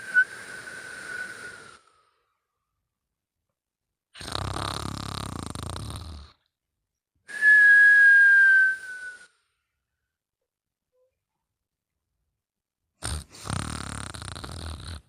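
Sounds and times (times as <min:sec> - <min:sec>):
whistling breath: 0:00.0 - 0:02.5, 0:07.3 - 0:09.7
man snoring: 0:04.2 - 0:06.4, 0:13.0 - 0:15.0.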